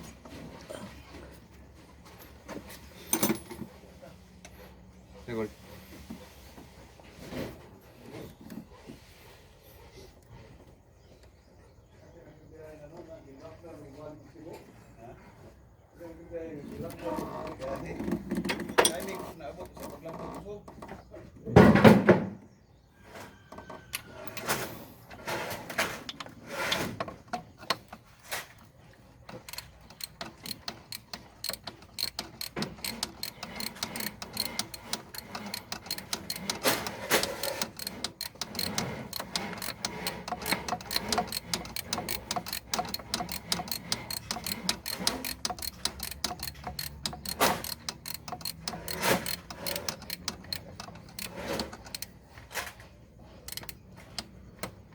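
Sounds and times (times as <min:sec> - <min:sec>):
ratchet wrench clicking: 0:29.3 - 0:52.2, 0:53.4 - 0:54.9.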